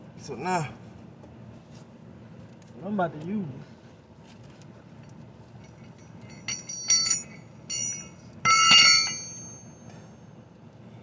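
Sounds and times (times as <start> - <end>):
steel hand tools clinking: 5.8 - 9.9.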